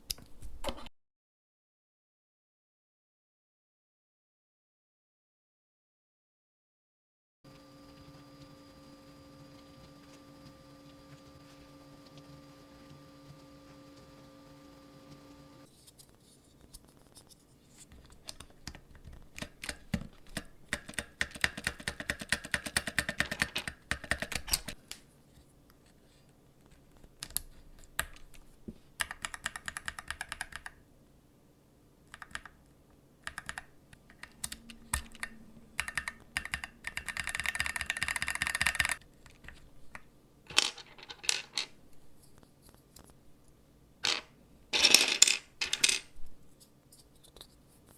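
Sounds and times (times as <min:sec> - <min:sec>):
keyboard parts clicking: 0:18.0 - 0:24.8, 0:26.8 - 0:28.4, 0:29.0 - 0:30.8, 0:32.1 - 0:32.6, 0:33.2 - 0:41.7.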